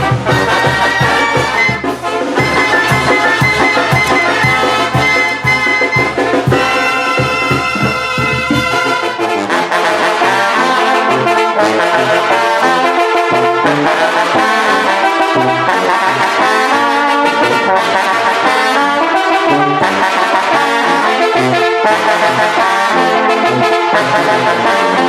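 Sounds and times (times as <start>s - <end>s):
brass band playing: 0.0s - 25.0s
steady low beat: 2.4s - 9.2s.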